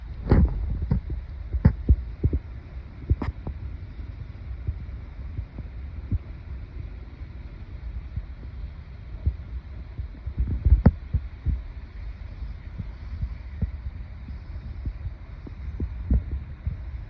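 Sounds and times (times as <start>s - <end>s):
muffled low thumps: 0.0s - 3.6s, 9.2s - 17.0s
steady low rumble: 0.0s - 17.0s.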